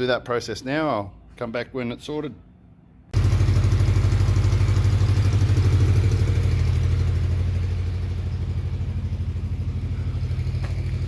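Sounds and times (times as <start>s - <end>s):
engine idling: 3.2s - 11.0s.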